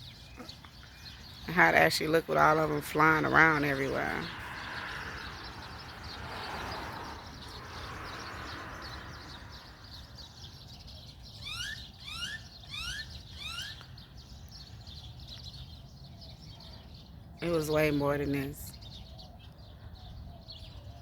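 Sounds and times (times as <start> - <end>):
sparrows chirping: 0.0 - 21.0
bird rising whistled calls: 11.4 - 13.8.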